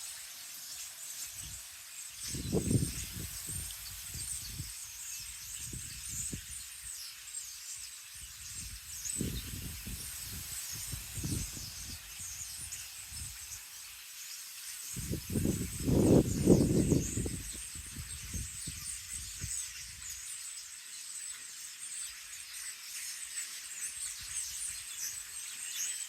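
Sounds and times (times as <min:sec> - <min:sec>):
small birds chirping: 0:00.0 - 0:26.0
wind buffeting microphone: 0:02.3 - 0:04.8, 0:05.4 - 0:06.6, 0:08.4 - 0:13.4, 0:15.0 - 0:19.6.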